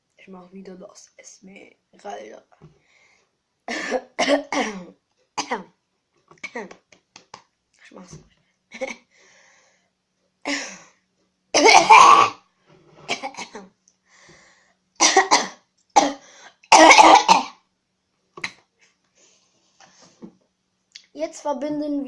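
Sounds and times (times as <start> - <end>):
person coughing hard: 3.7 - 5.6, 11.6 - 12.4, 15.0 - 17.6.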